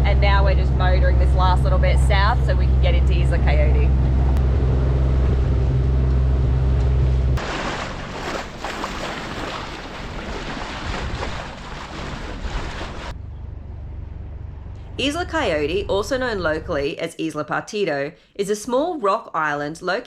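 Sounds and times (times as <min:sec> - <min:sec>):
boat engine running: 0:00.0 - 0:17.0
rushing wind: 0:01.2 - 0:16.6
water splashes: 0:07.4 - 0:13.2.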